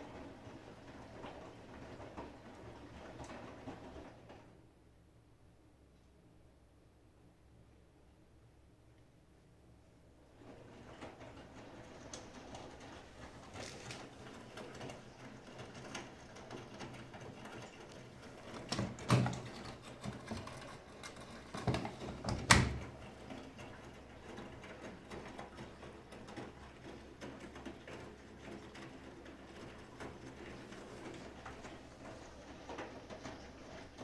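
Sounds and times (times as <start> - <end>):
washing machine drum turning: 17.8 - 34.0
laundry bumping in drum: 18.1 - 33.9.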